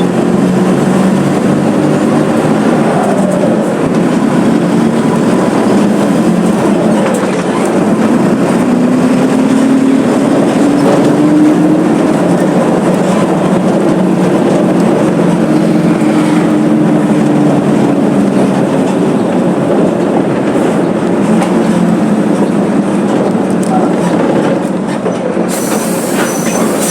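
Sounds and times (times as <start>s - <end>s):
bus diesel engine revving: 0.0s - 24.9s, 25.5s - 26.9s.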